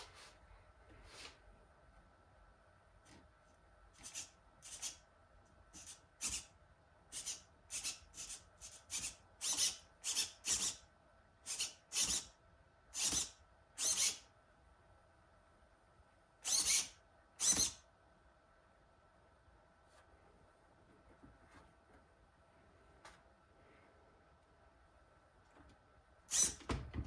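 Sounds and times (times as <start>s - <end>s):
hand tool scraping squeaks: 26.3s - 26.6s.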